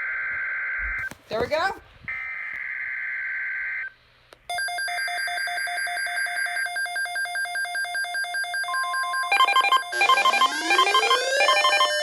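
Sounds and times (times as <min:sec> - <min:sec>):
alternating higher beeps: 0:05.5 - 0:12.0
rapid electronic beeps: 0:08.8 - 0:12.0
warbling data tones: 0:09.2 - 0:12.0.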